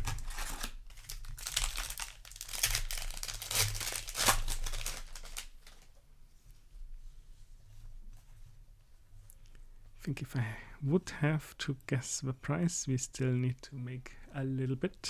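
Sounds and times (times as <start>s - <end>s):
foil wrapper crinkling and tearing: 0.0s - 5.9s.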